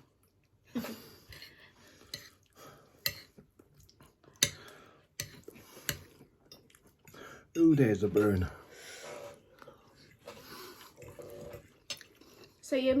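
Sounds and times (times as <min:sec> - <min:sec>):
soft chewing: 0:00.0 - 0:07.5, 0:09.0 - 0:12.6
cutlery clinking on a plate: 0:03.1 - 0:03.4, 0:04.4 - 0:06.7.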